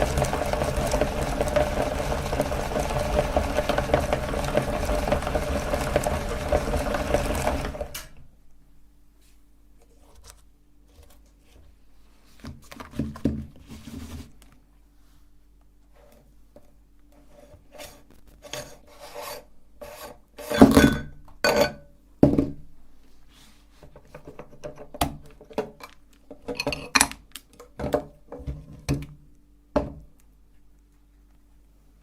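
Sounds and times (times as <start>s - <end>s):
faint steady hum: 7.9s - 32.0s
scraping and rasping strokes: 17.1s - 20.6s.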